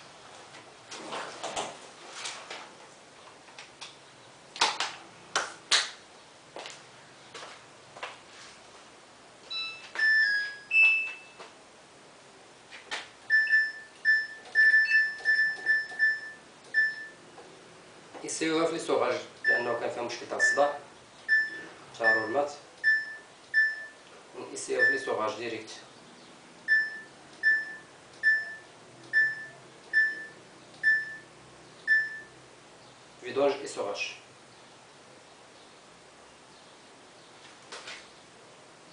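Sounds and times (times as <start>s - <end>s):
electronic beeps: 9.5s - 11.4s, 13.3s - 17.2s, 19.4s - 19.8s, 20.4s - 24.0s, 24.8s - 25.2s, 26.7s - 32.4s.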